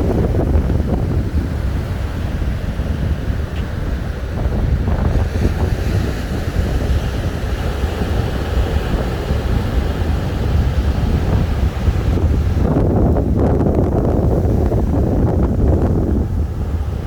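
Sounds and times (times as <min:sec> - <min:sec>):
surf breaking on beach: 0:00.0 - 0:17.0
wind buffeting microphone: 0:00.0 - 0:17.0.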